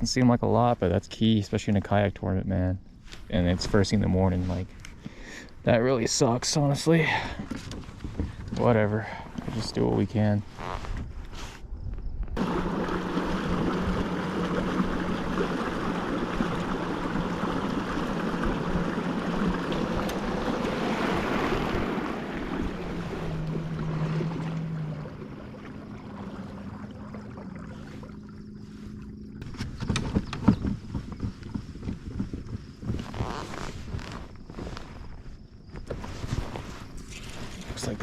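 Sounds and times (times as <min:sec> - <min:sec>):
electric motor hum: 0:12.4 - 0:29.4
water rushing along hull: 0:12.4 - 0:35.2.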